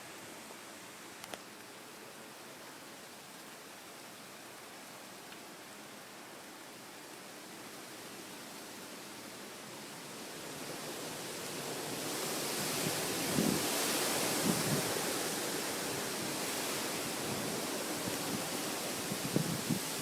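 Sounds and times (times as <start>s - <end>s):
strong wind gusting: 12.7s - 15.2s, 16.0s - 20.0s.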